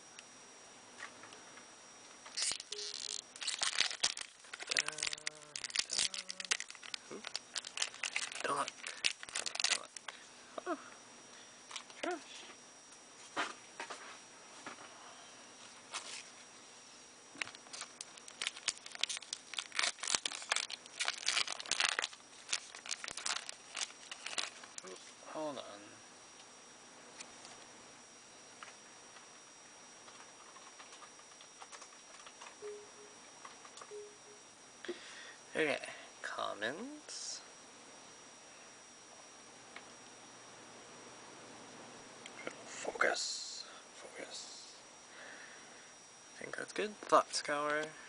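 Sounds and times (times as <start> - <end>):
foil wrapper crinkling and tearing: 2.3 - 10.2, 17.4 - 24.9.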